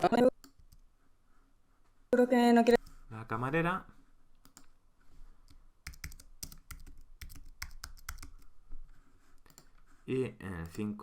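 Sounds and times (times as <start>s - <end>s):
typing on keyboard: 5.5s - 8.5s.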